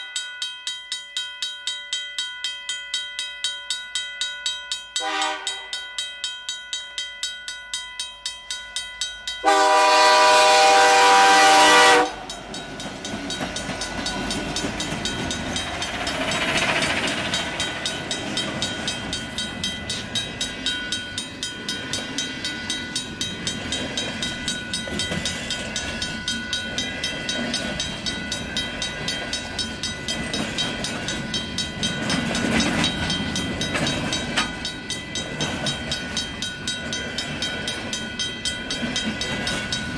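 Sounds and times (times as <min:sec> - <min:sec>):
bell ringing: 0:00.0 - 0:39.9
locomotive horn blast: 0:05.0 - 0:05.7, 0:09.4 - 0:12.3
train rumbling past: 0:09.4 - 0:39.9.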